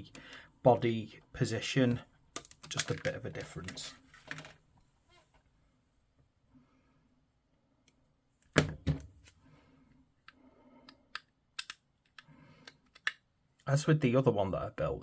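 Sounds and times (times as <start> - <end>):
plastic parts clicking: 2.3 - 4.6, 10.2 - 13.3.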